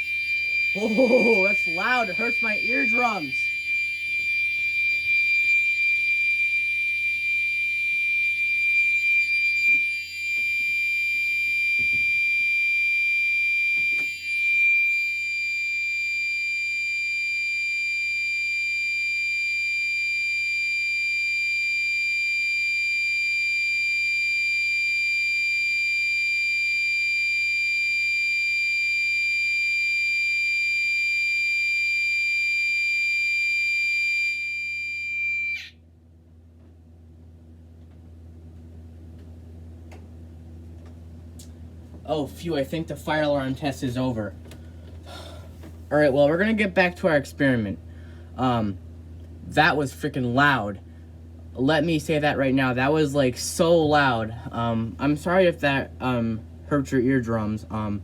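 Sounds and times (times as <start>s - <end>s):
fire alarm tone: 0.0s - 35.8s.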